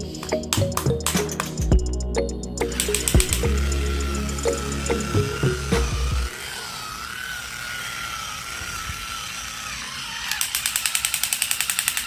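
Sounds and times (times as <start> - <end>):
wavering electronic tone: 0.0 - 7.7
toy mechanical clicking: 2.6 - 5.1, 6.4 - 12.0.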